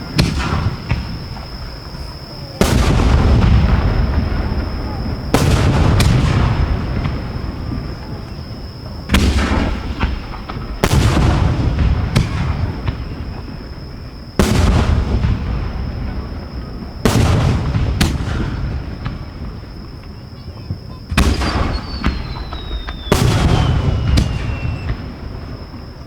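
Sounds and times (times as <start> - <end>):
rumbling echo: 0.0 - 19.5
firework shells booming: 0.0 - 26.0.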